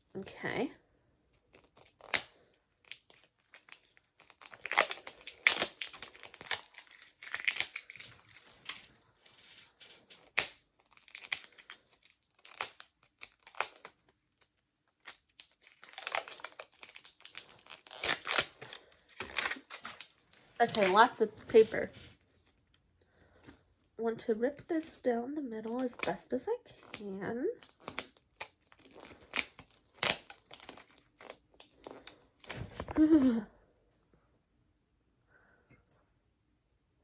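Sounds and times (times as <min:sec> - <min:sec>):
wrapping crinkling and tearing: 0:01.4 - 0:22.6, 0:25.6 - 0:33.4.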